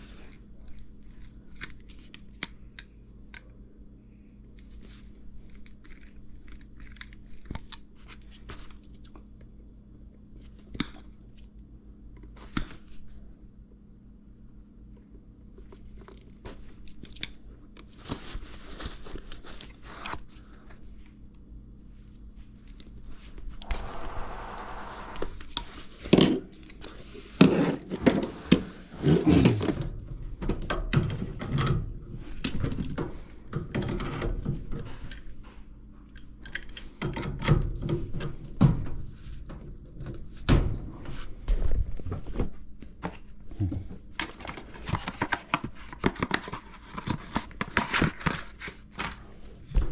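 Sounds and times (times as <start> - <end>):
brief whirring: 23.6 - 25.5
steady low hum: 23.6 - 25.6.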